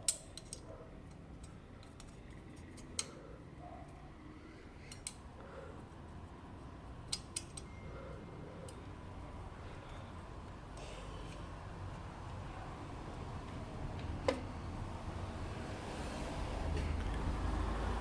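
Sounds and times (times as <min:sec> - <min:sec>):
hand tool metal clicks: 0:00.0 - 0:03.2, 0:07.1 - 0:07.7.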